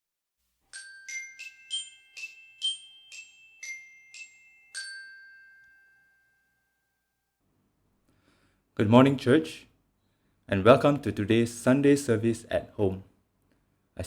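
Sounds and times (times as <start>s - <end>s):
glockenspiel chime melody: 0.7s - 7.1s.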